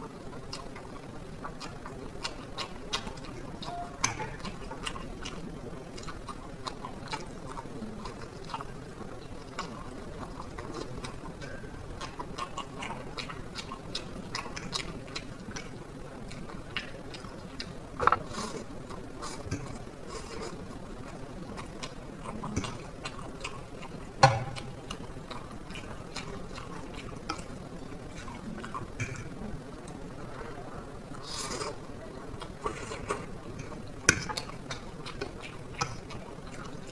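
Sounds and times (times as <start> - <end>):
chewing and mouth clicks: 0.2 - 30.0, 31.1 - 36.9.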